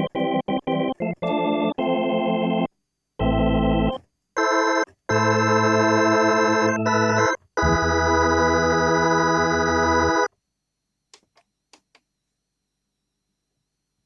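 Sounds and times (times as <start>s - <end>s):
synthesizer organ chords: 0.0s - 10.3s.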